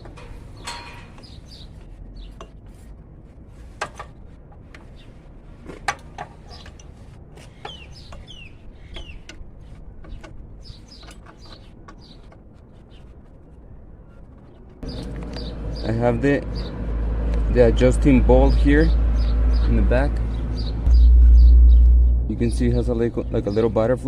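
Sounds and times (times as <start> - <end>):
bird chirps: 1.1 - 2.4, 7.4 - 9.4, 10.1 - 13.1, 18.5 - 24.0.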